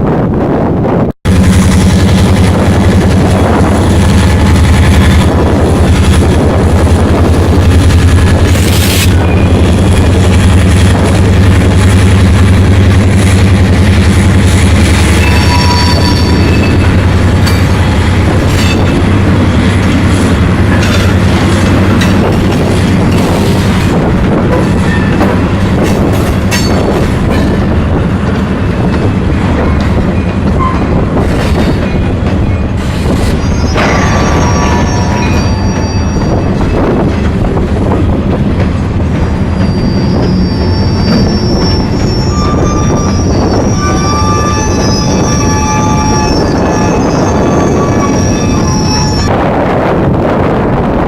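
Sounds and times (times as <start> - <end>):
diesel locomotive rumble: 0.0 - 51.0
train wheel squeals: 7.7 - 27.8, 28.8 - 37.1, 39.2 - 49.3.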